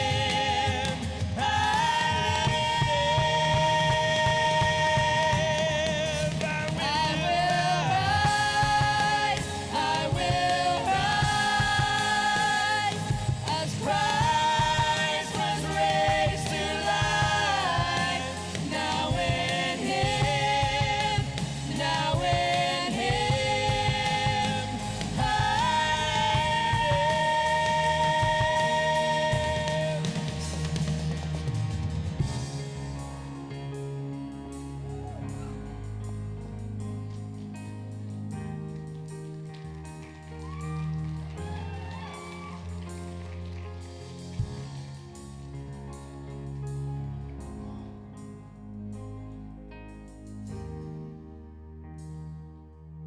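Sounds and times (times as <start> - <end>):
voices singing with vibrato: 0.0 - 33.6
live worship band playing: 0.0 - 51.4.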